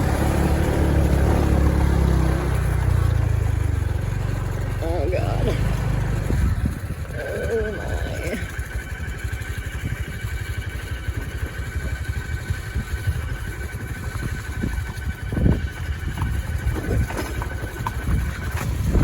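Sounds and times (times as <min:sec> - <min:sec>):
motorbike engine rumbling: 0:00.0 - 0:19.0
motorbike jolt: 0:14.8 - 0:19.0.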